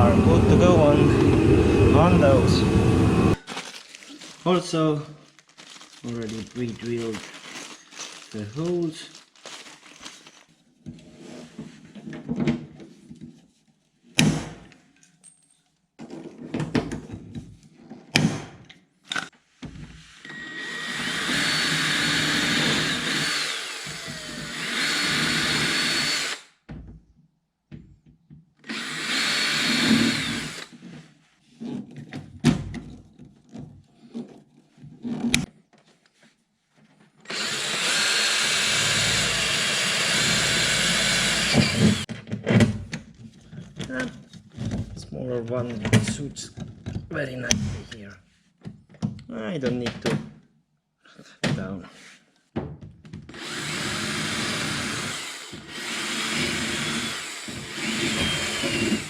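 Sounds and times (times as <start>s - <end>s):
power drill whining: 0.0s - 3.5s, 20.2s - 26.6s, 28.6s - 30.8s, 37.2s - 42.1s, 53.3s - 59.0s.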